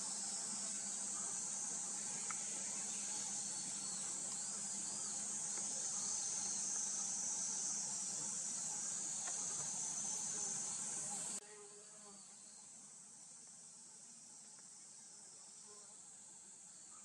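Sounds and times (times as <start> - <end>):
insects shrilling: 0.0 - 11.4
faint outdoor background: 0.0 - 17.0.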